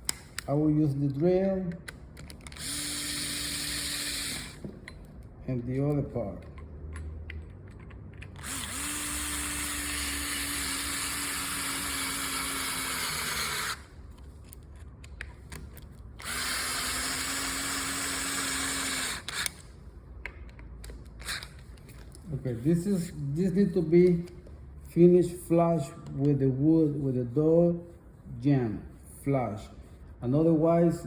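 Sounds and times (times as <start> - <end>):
power drill driving screws: 2.5 - 4.6, 8.4 - 13.9, 16.2 - 19.7, 21.2 - 21.6.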